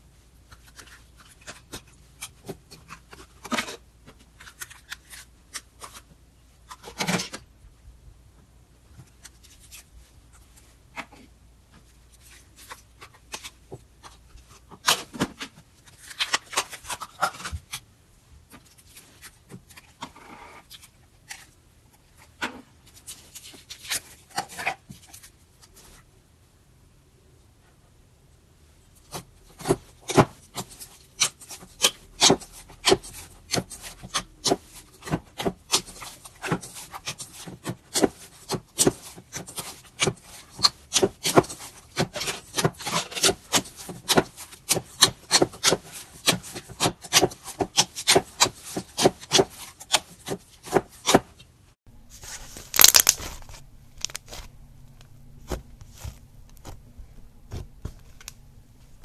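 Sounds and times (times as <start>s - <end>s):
slime crackling: 52.1s - 59.0s.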